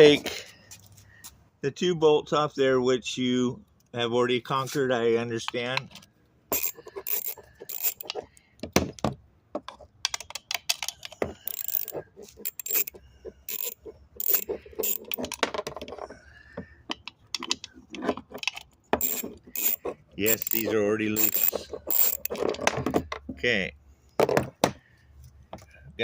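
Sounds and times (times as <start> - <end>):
metal tools clinking and rattling: 6.5 - 8.3, 10.2 - 16.1, 17.4 - 23.2.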